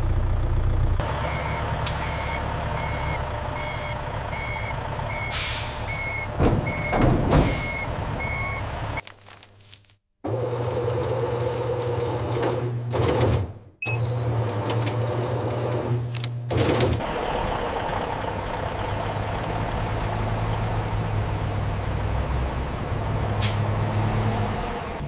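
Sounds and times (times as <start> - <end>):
vehicle engine humming: 0.0 - 9.1, 14.0 - 25.0
short clunks: 6.2 - 7.9.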